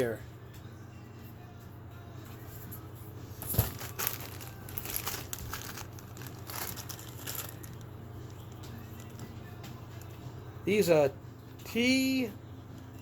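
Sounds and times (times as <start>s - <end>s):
packaging crinkling and rustling: 3.4s - 9.3s.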